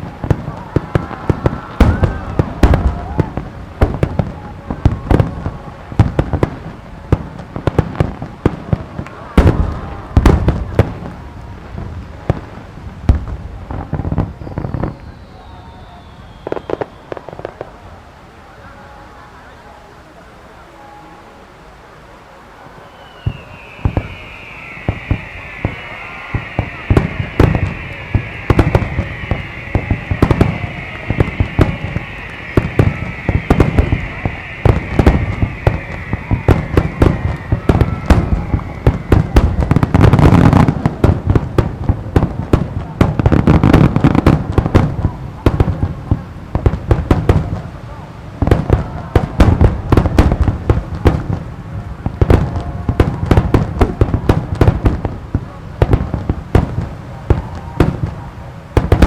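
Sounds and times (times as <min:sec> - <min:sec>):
fireworks bursts and bangs: 0:00.0 - 0:18.2, 0:22.8 - 0:59.0
high descending whistle: 0:14.3 - 0:17.5, 0:22.6 - 0:40.8.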